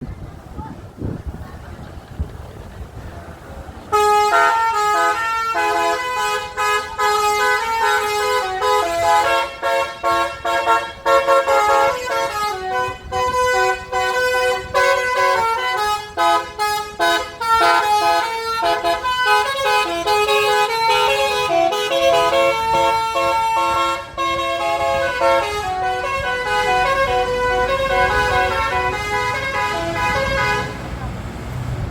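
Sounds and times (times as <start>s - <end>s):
multi-tone musical bus horn: 3.8s - 31.3s.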